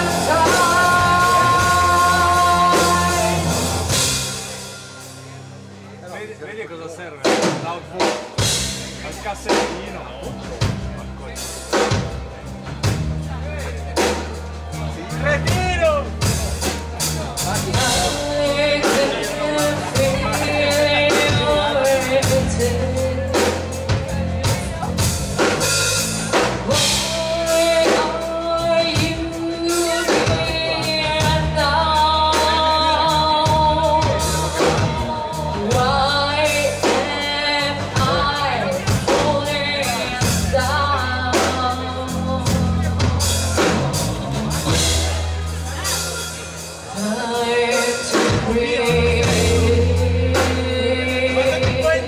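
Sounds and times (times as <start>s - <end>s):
person singing: 0.0s - 4.5s, 17.5s - 25.2s, 26.6s - 43.7s, 46.9s - 52.0s
bass guitar: 0.0s - 6.3s, 7.2s - 52.0s
drum kit: 0.0s - 52.0s.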